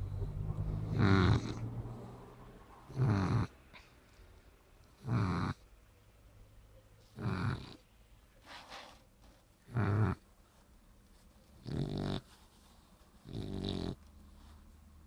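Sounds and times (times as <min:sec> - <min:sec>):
dog snoring: 0:00.0 - 0:02.2, 0:02.9 - 0:03.6, 0:05.0 - 0:05.6, 0:07.1 - 0:07.8, 0:09.7 - 0:10.2, 0:11.6 - 0:12.3, 0:13.2 - 0:14.0.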